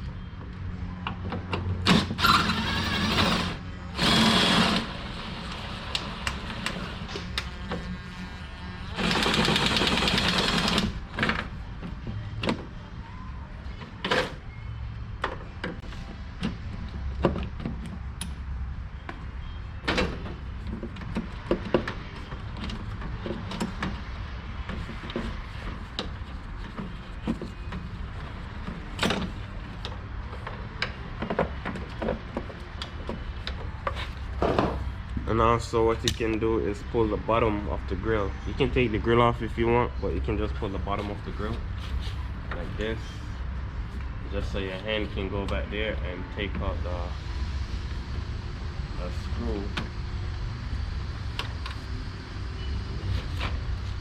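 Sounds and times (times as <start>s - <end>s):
small power tool running: 7.8s - 10.8s.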